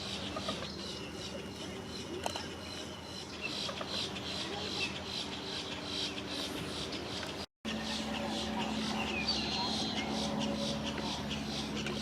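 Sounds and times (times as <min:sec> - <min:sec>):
distant voices: 0:00.0 - 0:12.0
low background hum: 0:00.0 - 0:12.0
pulsing calls: 0:07.7 - 0:12.0.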